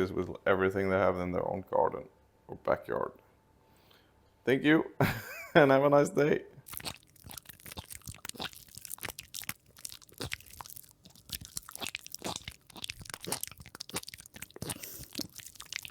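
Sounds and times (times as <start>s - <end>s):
person chewing crunchy food: 6.7s - 15.9s.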